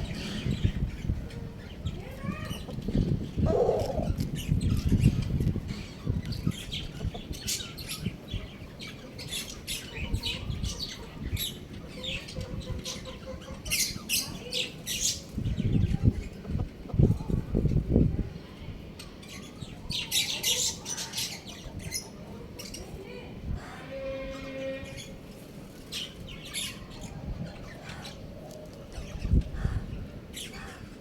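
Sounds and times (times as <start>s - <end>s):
chickens squawking: 0.0s - 17.8s.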